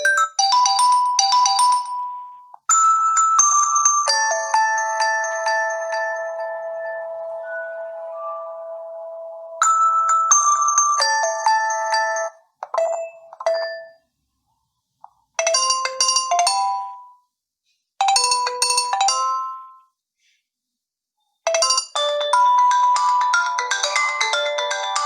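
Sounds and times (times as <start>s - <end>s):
phone ringtone melodies: 0.0s - 14.0s, 21.5s - 25.0s.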